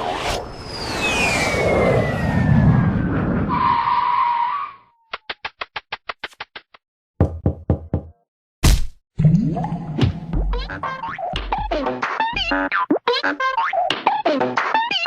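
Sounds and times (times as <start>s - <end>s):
noisy rush with falling whistle: 0.0s - 5.1s.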